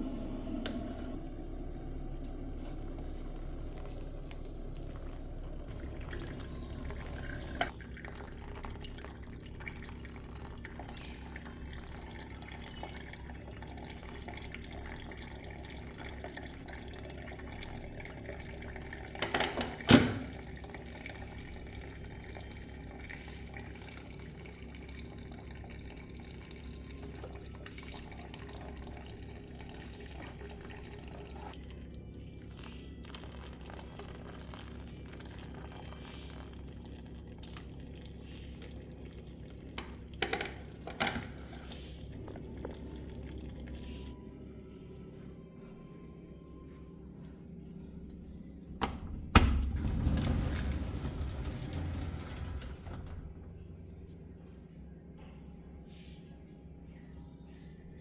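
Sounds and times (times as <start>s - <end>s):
water running from a tap: 3.0s - 44.1s.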